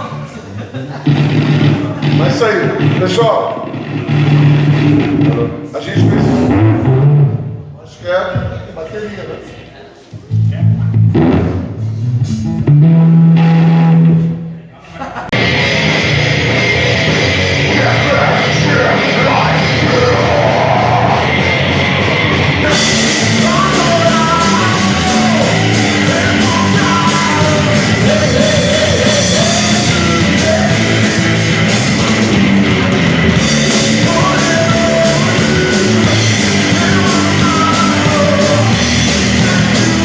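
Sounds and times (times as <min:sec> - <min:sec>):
heavy rock music: 0:01.0 - 0:07.7, 0:11.0 - 0:14.3, 0:15.3 - 0:40.0
person singing or yelling: 0:16.7 - 0:40.0.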